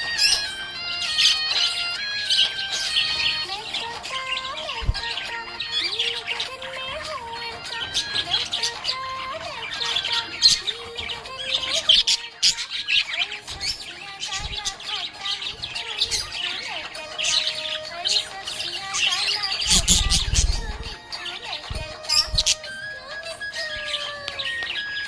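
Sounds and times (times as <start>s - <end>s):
background music: 0.0s - 25.0s
budgerigars chirping: 0.0s - 25.0s.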